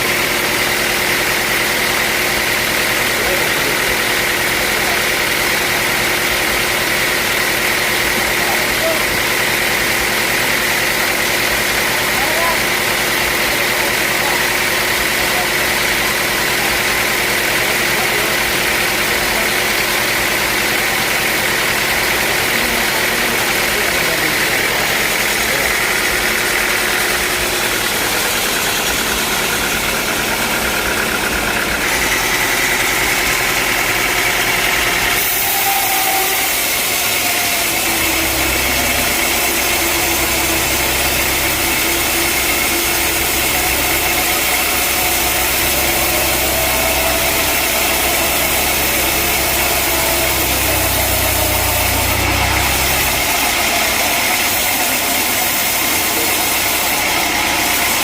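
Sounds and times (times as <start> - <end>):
sawmill engine running: 0.0 - 58.0
low hum: 37.4 - 54.7.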